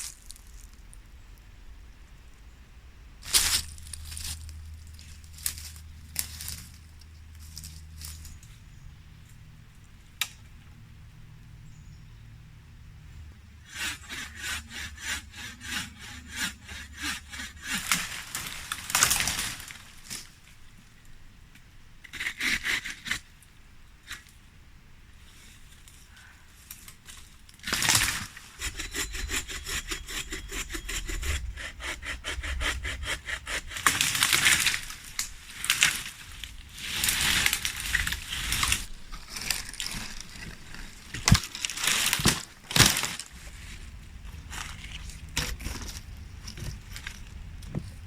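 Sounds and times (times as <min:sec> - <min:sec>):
rasping saw strokes through wood: 0:13.6 - 0:18.7, 0:28.1 - 0:35.0
wood snapping: 0:17.8 - 0:20.3, 0:33.6 - 0:43.4.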